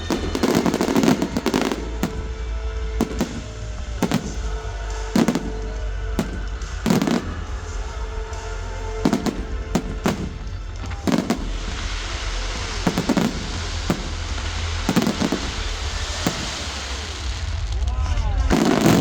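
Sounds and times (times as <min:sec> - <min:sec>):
fireworks bursting: 0:00.0 - 0:17.9, 0:18.5 - 0:19.0
fireworks crackling: 0:00.0 - 0:19.0
music: 0:00.0 - 0:19.0.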